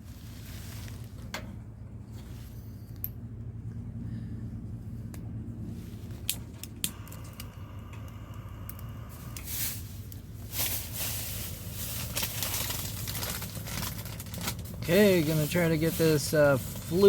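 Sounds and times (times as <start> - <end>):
fire crackling and hissing: 5.7 - 17.0
sharp clicks: 6.3 - 9.5.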